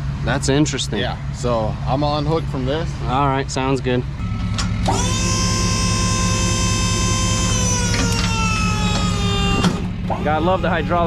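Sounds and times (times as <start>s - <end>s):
truck engine idling: 0.0s - 11.0s
hydraulic jack motor whining: 4.2s - 11.0s.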